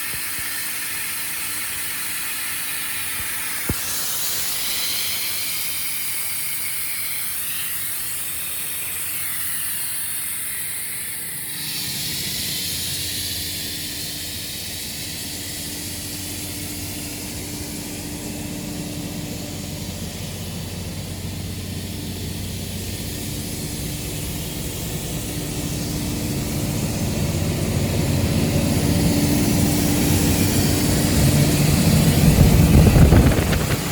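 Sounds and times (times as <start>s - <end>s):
air compressor running: 0.0s - 33.9s.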